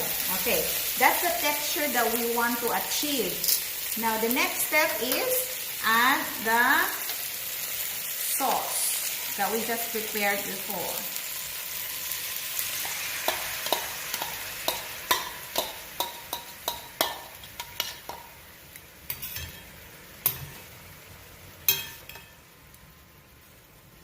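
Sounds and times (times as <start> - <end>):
chicken sizzling in a skillet: 0.0 - 24.0
spoon clicking against pan: 13.3 - 18.3.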